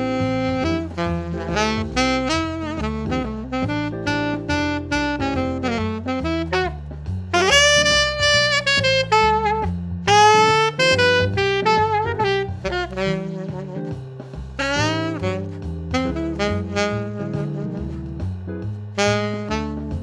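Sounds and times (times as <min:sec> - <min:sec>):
alto saxophone jazz solo: 0:00.0 - 0:20.0
stepping bass line: 0:00.0 - 0:20.0.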